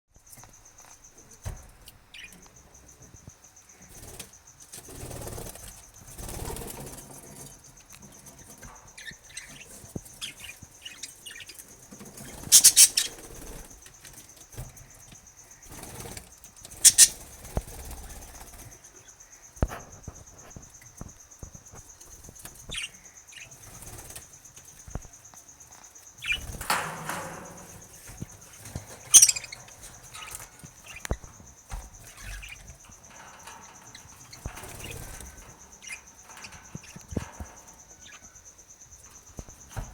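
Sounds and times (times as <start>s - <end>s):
budgerigars flapping wings: 12.1s - 13.8s, 15.6s - 18.8s, 26.2s - 39.9s.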